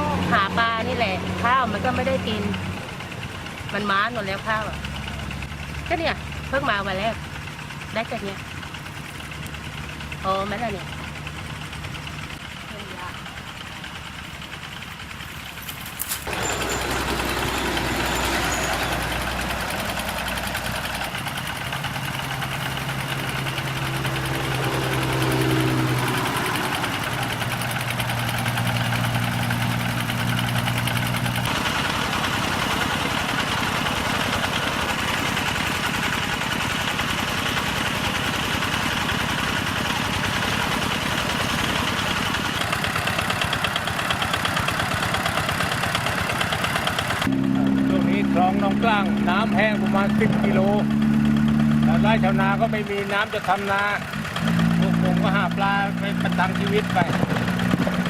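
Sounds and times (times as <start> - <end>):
water pump engines running: 0.0 - 58.0.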